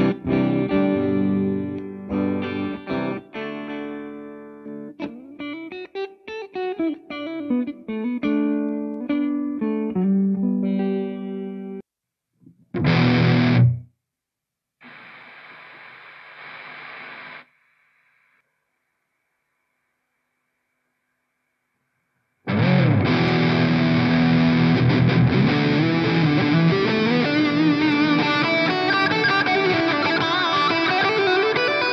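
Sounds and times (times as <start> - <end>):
electric guitar notes and bends: 0.0 - 11.8, 12.7 - 13.9, 22.5 - 31.9
loud noisy burst: 14.8 - 17.6
steady hiss: 14.8 - 21.8.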